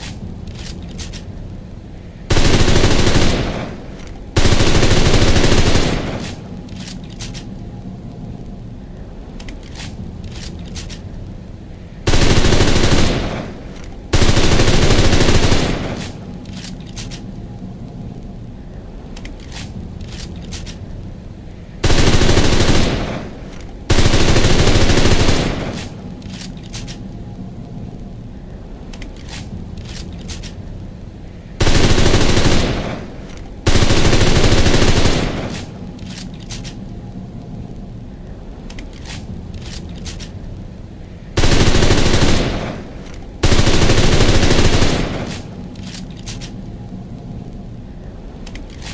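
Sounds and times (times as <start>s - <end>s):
steady background hiss: 0.0s - 48.9s
submachine gun firing bursts: 2.3s - 3.8s, 4.4s - 6.4s, 12.1s - 16.2s, 21.8s - 25.9s, 31.6s - 33.1s, 33.7s - 35.7s, 41.4s - 45.5s.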